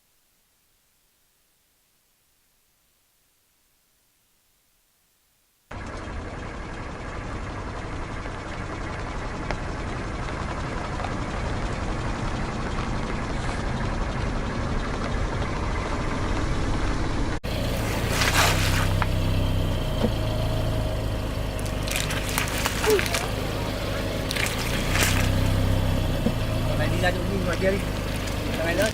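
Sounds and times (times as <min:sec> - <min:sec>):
car engine running: 0:05.7 - 0:28.9
short crackling bursts: 0:21.2 - 0:25.8.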